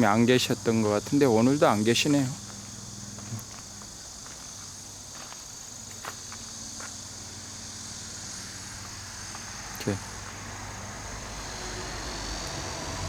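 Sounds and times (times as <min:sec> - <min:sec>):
insect chirring: 0:00.0 - 0:13.0
faint footsteps: 0:00.7 - 0:07.3, 0:08.6 - 0:10.4.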